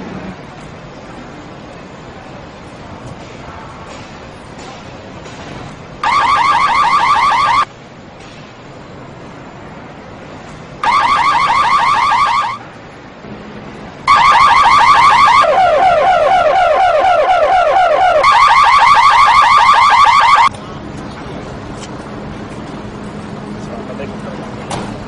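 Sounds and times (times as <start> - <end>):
car alarm siren warbling: 6.0 - 7.7, 10.8 - 12.6, 14.1 - 20.5.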